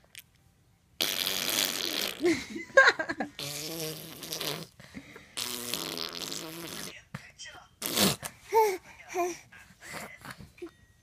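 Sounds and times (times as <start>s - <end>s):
baby blowing raspberries: 1.0s - 2.3s, 3.4s - 6.9s, 7.8s - 9.4s.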